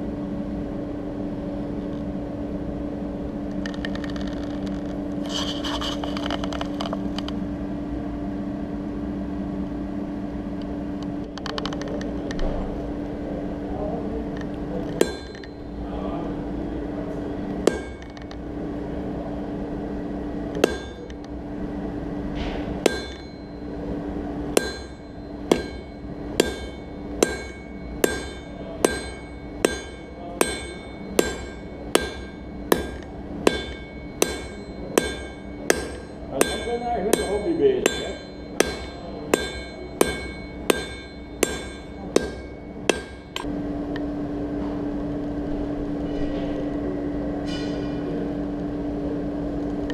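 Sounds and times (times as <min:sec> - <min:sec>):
steady hum: 0:00.0 - 0:49.9
hammer striking steel on anvil: 0:14.9 - 0:15.8, 0:17.6 - 0:18.3, 0:20.6 - 0:21.3, 0:22.4 - 0:23.8, 0:24.5 - 0:43.5, 0:47.4 - 0:48.0.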